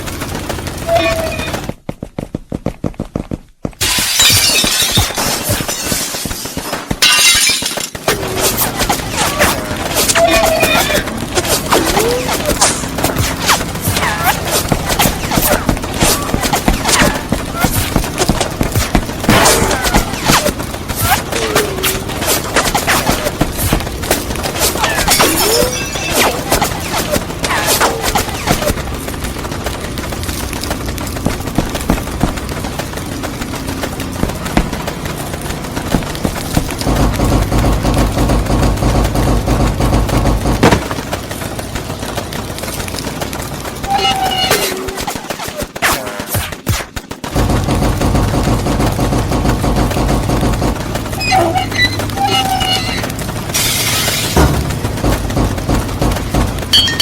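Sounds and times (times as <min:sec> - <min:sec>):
wood chipper motor rumble: 0:00.0 - 0:01.8, 0:08.0 - 0:45.2, 0:47.0 - 0:57.0
squealing tones: 0:00.8 - 0:01.7, 0:08.3 - 0:18.2, 0:24.6 - 0:28.8, 0:43.8 - 0:45.6, 0:51.1 - 0:54.5
sharp cracks and impacts: 0:03.7 - 0:57.0.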